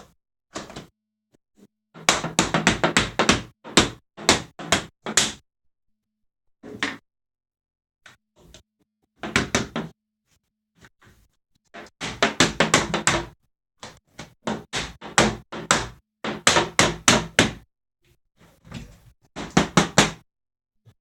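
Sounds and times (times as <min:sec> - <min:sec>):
sharp knocks on window frame: 0:19.4 - 0:20.2.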